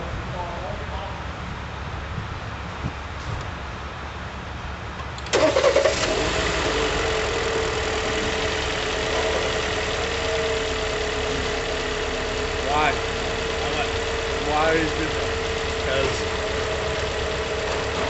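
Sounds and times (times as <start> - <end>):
car engine starting and idling: 4.9 - 18.0.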